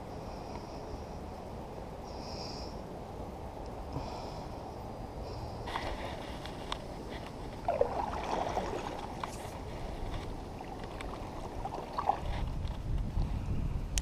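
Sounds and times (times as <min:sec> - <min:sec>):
water sloshing around a kayak: 0:05.7 - 0:13.0.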